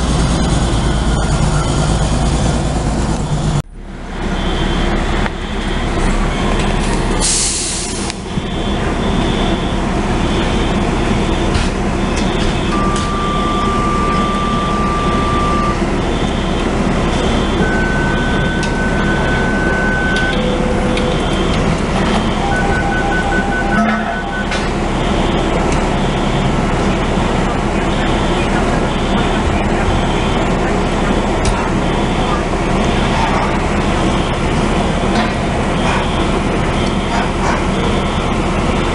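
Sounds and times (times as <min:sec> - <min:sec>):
fire truck engine running: 0:00.0 - 0:38.9
air brakes hissing: 0:07.2 - 0:08.2
long electronic beeps: 0:07.7 - 0:33.2
fire alarm sounding: 0:08.4 - 0:34.8.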